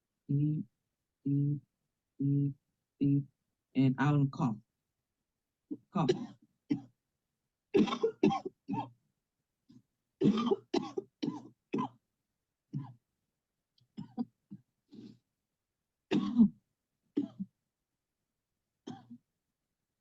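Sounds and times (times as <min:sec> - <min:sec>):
person coughing: 0:05.8 - 0:06.9, 0:07.8 - 0:08.9, 0:10.2 - 0:12.0, 0:14.0 - 0:14.3, 0:16.1 - 0:16.6, 0:17.2 - 0:17.5, 0:18.9 - 0:19.2.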